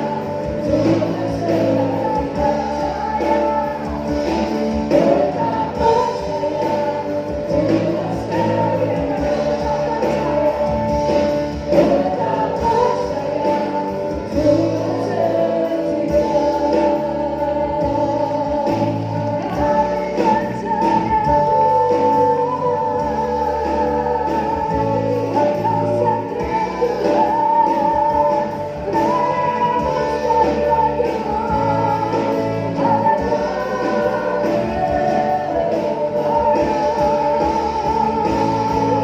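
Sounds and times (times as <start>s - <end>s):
choir singing: 0.0s - 39.0s.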